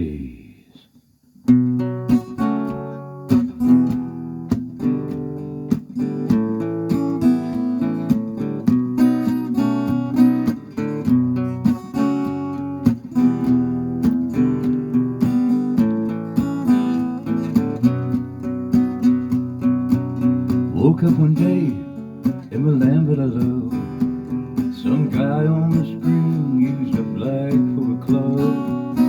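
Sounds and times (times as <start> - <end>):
acoustic guitar strumming: 1.4 - 29.0.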